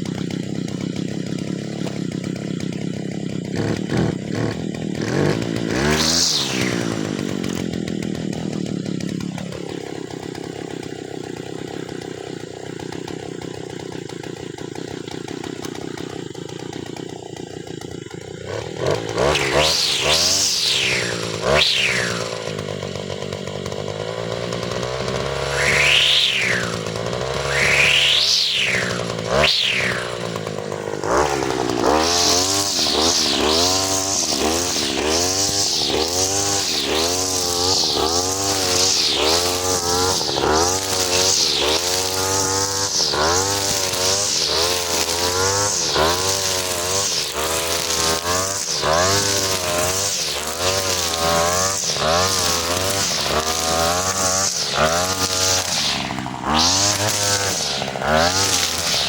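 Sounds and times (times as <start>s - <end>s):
brush cutter engine running hard: 0.0s - 59.0s.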